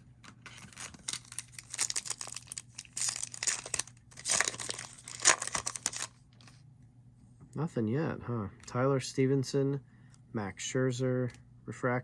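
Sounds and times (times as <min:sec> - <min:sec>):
foil wrapper crinkling: 0:00.4 - 0:06.6
foil wrapper tearing: 0:00.5 - 0:06.1.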